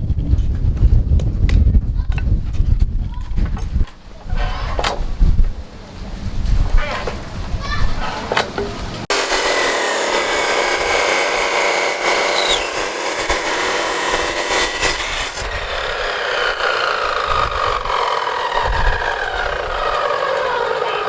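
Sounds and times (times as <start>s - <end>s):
power tool grinding: 9.1s - 21.0s.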